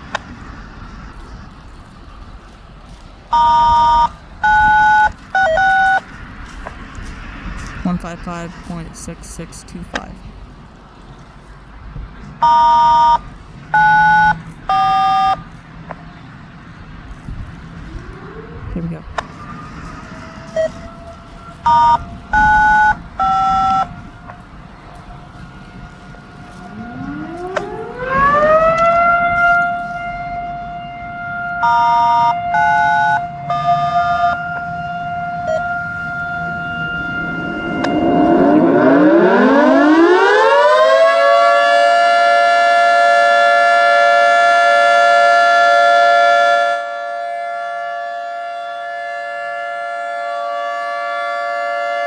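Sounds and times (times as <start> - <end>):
radio scanner beeps: 3.3 - 6.1, 12.4 - 13.2, 13.8 - 15.5, 20.6 - 20.9, 21.6 - 23.9
rotating siren winding up: 3.3 - 6.1, 17.6 - 30.7, 31.6 - 46.8.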